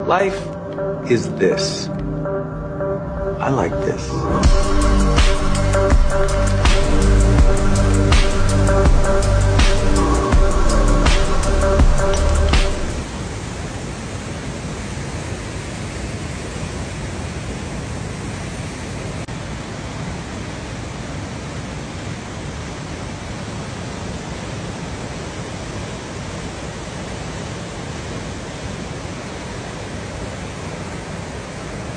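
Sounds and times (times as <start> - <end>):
waterfall roaring: 6.8 - 31.9.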